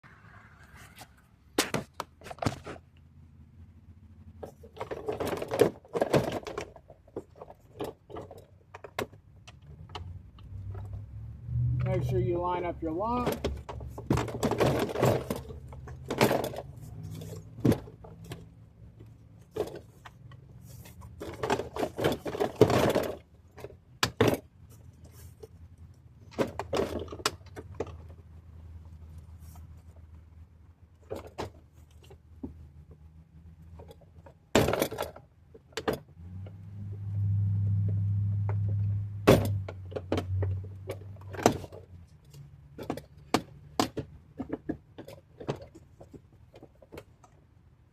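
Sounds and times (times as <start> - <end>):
clicks and rattles of car door parts: 1.6 - 2.9, 4.3 - 11.0, 13.1 - 25.5, 26.2 - 28.4, 30.9 - 33.0, 33.7 - 36.2, 38.4 - 47.4.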